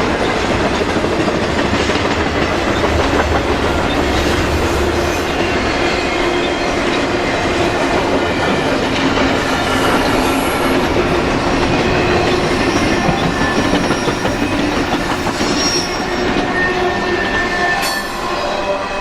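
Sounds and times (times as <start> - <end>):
train wheels rumbling on rails: 0.0 - 19.0
high squealing of wheels: 11.9 - 19.0.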